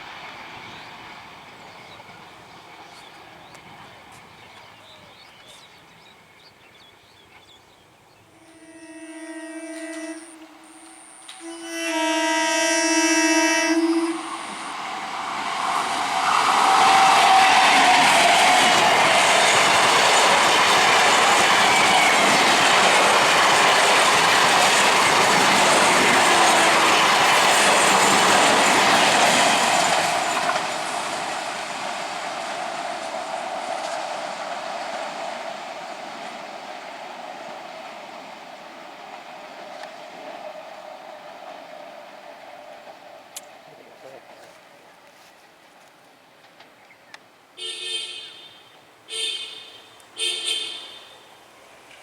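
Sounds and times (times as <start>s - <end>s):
train passing on rails: 0.0s - 52.0s
thin steady whine: 8.4s - 16.1s.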